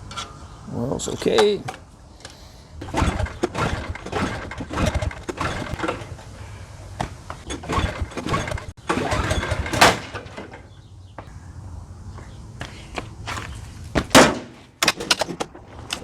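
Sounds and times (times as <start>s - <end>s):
engine recoil starter pulls: 2.8s - 6.4s, 7.4s - 10.8s, 14.8s - 16.0s.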